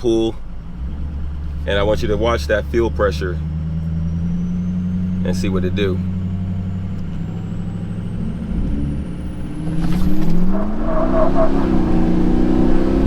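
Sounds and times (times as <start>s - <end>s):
diesel engine accelerating: 0.0s - 13.0s
turbo whistle rising: 8.1s - 13.0s.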